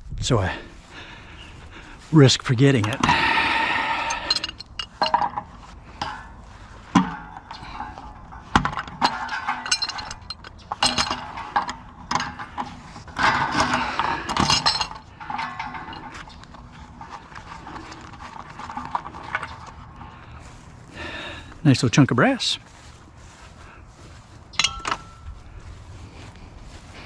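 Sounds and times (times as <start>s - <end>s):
metal scraping: 1.5s - 21.0s
metal tools clinking on fittings: 2.5s - 20.1s, 24.5s - 25.4s.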